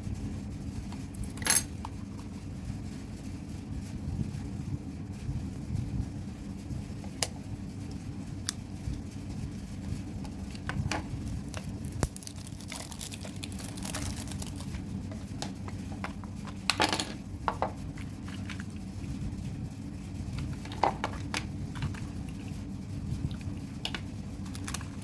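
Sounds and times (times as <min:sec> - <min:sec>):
packaging crinkling and rustling: 0:10.5 - 0:16.8, 0:23.9 - 0:25.0
packaging clicks: 0:11.5 - 0:14.7.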